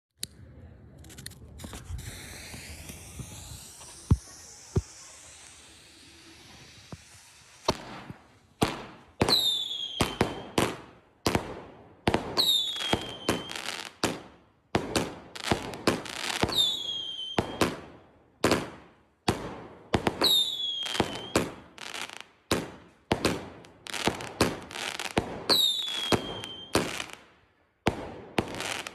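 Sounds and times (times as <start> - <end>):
fireworks bangs: 1.6 - 28.9
firework whistle: 1.7 - 8.2, 8.8 - 10.9, 12.3 - 14.0, 15.3 - 17.8, 20.0 - 22.2, 23.6 - 27.2.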